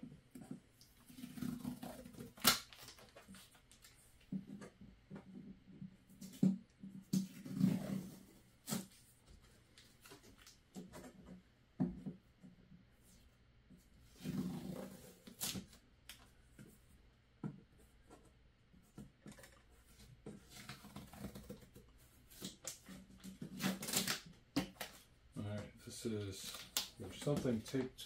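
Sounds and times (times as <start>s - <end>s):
packaging clicks and rustles: 1.4s - 4.0s.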